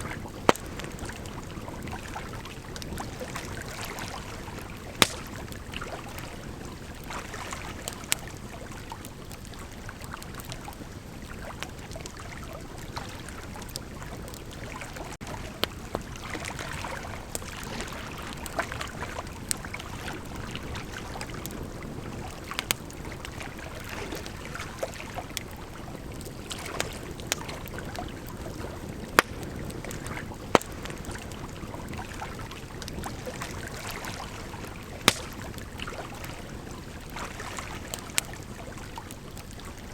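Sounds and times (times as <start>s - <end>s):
burning wood crackling and popping: 0.0s - 39.9s
bonfire hissing: 4.4s - 7.0s, 34.4s - 36.9s.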